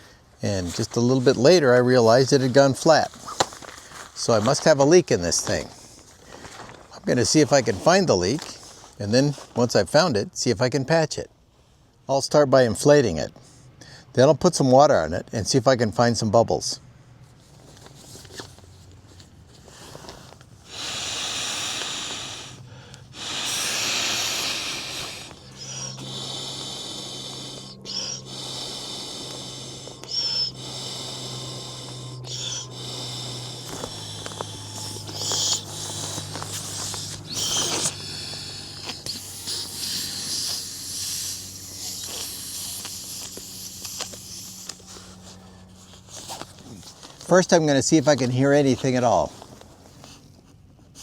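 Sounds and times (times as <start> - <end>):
faint low hum: 0.0 - 51.0
air blown into mattress valve: 19.7 - 45.4.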